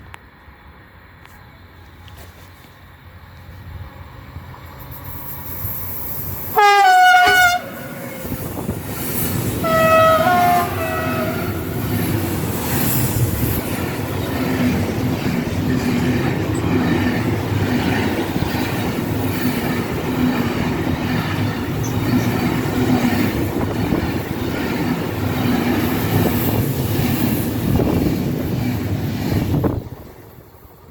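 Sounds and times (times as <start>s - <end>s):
train rumble: 0.0s - 30.9s
locomotive horn blasts: 6.6s - 8.5s, 9.6s - 11.9s
wheels clacking over rail joints: 7.0s - 30.9s.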